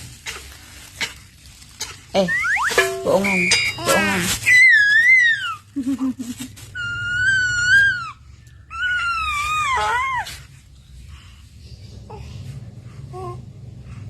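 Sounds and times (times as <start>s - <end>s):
baby squealing: 2.3s - 5.7s, 6.8s - 10.3s.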